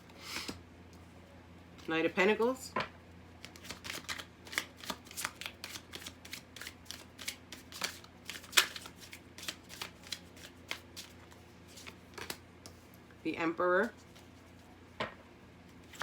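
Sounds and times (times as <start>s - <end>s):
cards being shuffled: 3.4s - 12.8s.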